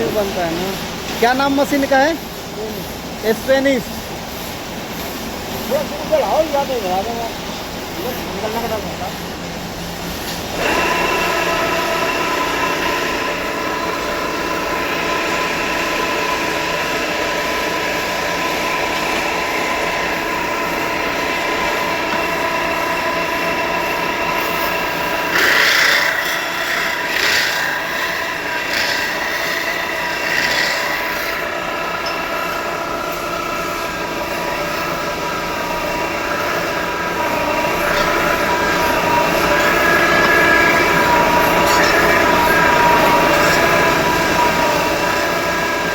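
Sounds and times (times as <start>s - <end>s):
lathe whining: 0.0s - 45.9s
metal scraping squeals: 10.6s - 45.9s.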